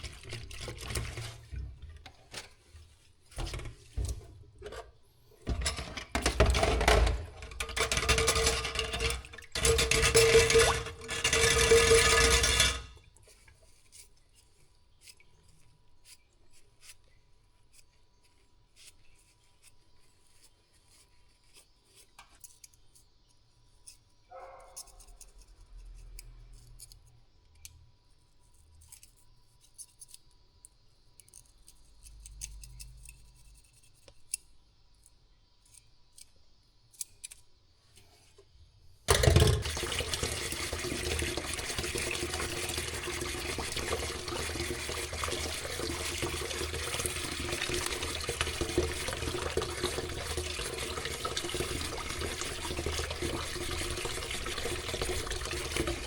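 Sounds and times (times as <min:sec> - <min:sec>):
water running into a sink: 0:00.0 - 0:02.6, 0:03.3 - 0:04.8, 0:05.4 - 0:13.2, 0:39.1 - 0:56.0.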